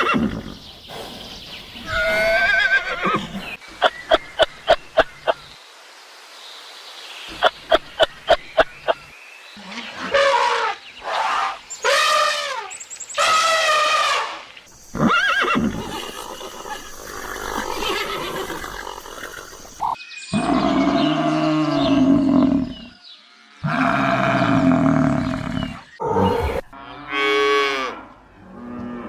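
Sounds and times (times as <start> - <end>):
rough noisy animal call: 9.7 - 22.9, 23.6 - 28.0
low long animal call: 14.7 - 22.9
wavering animal calls: 14.7 - 22.9, 23.6 - 26.8.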